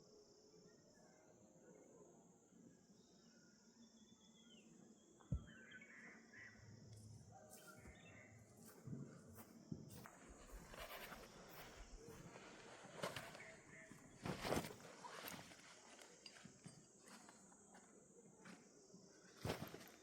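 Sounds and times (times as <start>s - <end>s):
rustling and crunching footsteps: 7.5s - 17.3s.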